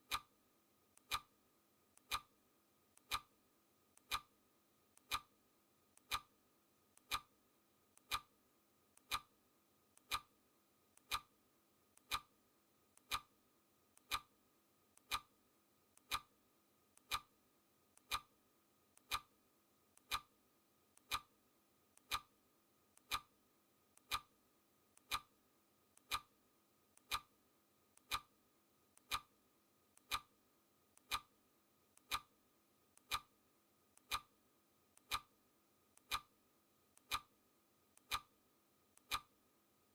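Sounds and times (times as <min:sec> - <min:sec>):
clock ticking: 0:00.1 - 0:00.3, 0:01.0 - 0:01.3, 0:02.0 - 0:02.3, 0:03.0 - 0:03.3, 0:04.0 - 0:04.3, 0:05.0 - 0:05.3, 0:06.0 - 0:06.3, 0:07.0 - 0:07.3, 0:08.0 - 0:08.3, 0:09.0 - 0:09.3, 0:10.0 - 0:10.3, 0:11.0 - 0:11.3, 0:12.0 - 0:12.3, 0:13.0 - 0:13.3, 0:14.0 - 0:14.3, 0:15.0 - 0:15.3, 0:16.0 - 0:16.3, 0:17.0 - 0:17.3, 0:18.0 - 0:18.3, 0:19.0 - 0:19.3, 0:20.0 - 0:20.3, 0:21.0 - 0:21.3, 0:22.0 - 0:22.3, 0:23.0 - 0:23.3, 0:24.0 - 0:24.3, 0:25.0 - 0:25.3, 0:26.0 - 0:26.3, 0:27.0 - 0:27.3, 0:28.0 - 0:28.3, 0:29.0 - 0:29.3, 0:30.0 - 0:30.3, 0:31.0 - 0:31.3, 0:32.0 - 0:32.3, 0:33.0 - 0:33.3, 0:34.0 - 0:34.3, 0:35.0 - 0:35.3, 0:36.0 - 0:36.3, 0:37.0 - 0:37.3, 0:38.0 - 0:38.3, 0:39.0 - 0:39.3.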